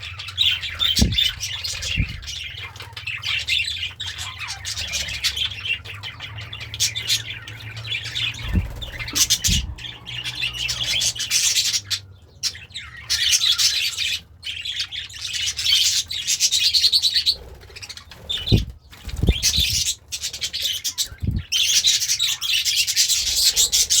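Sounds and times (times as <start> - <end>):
budgerigar chattering and chirping: 0.0 - 24.0
dull low thumps: 0.8 - 2.3, 8.4 - 10.0.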